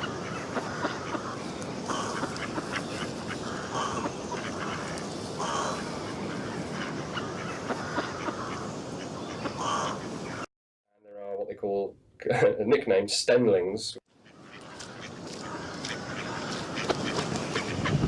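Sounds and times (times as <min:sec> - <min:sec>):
ducks quacking: 0:00.0 - 0:10.5, 0:14.1 - 0:18.0.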